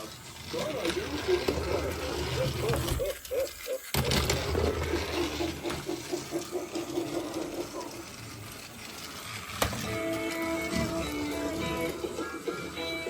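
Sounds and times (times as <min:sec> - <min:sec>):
toy pulsing sound effect: 0:00.0 - 0:09.3, 0:09.9 - 0:13.0.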